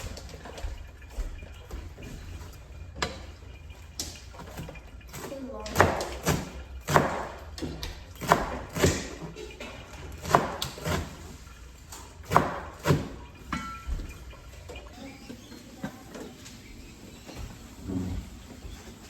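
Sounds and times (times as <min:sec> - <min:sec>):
kitchenware knocking and clattering: 0:12.1 - 0:14.9.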